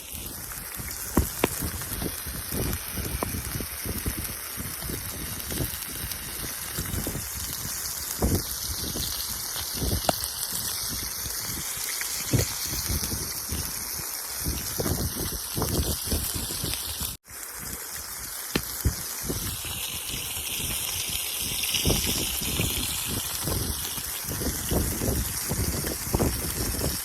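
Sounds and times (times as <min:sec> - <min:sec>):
burgers sizzling: 0:00.0 - 0:27.0
fire pops and crackles: 0:00.0 - 0:27.0.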